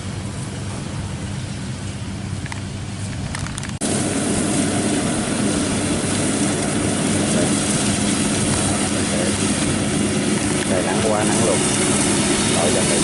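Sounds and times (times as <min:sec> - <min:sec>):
diesel engine droning: 0:00.0 - 0:13.0
threshing machinery rushing: 0:03.2 - 0:13.0.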